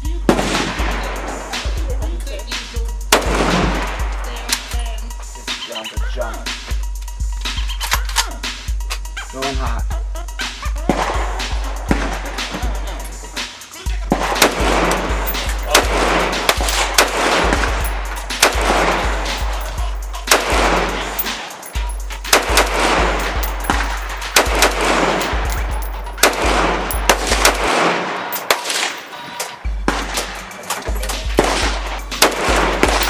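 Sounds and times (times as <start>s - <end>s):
rifle shots with echo: 3.1s - 4.8s, 14.1s - 29.2s, 29.9s - 30.5s, 31.3s - 33.0s.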